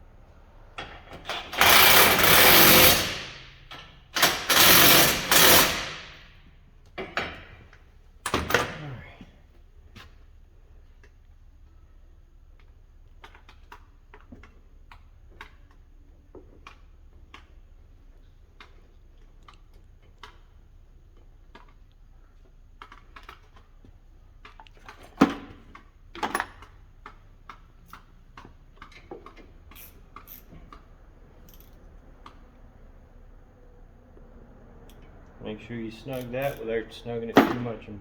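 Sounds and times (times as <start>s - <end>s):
wrench clicking on metal: 1.3s - 6.1s, 28.8s - 30.8s, 36.1s - 36.8s.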